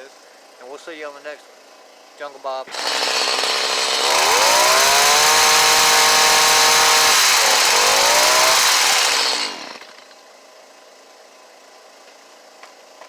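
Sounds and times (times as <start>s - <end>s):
hedge trimmer engine revving: 2.7s - 10.1s.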